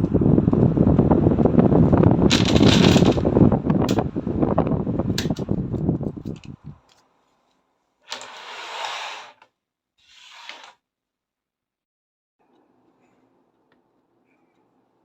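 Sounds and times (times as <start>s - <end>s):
air blowing on microphone: 0.0s - 6.8s
dominoes clattering: 2.3s - 3.2s.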